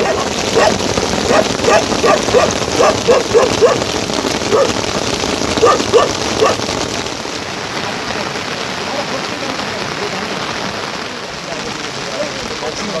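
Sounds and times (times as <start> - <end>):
dog barking: 0.0 - 3.9, 4.5 - 4.8, 5.6 - 6.6
heavy rain: 0.0 - 13.0.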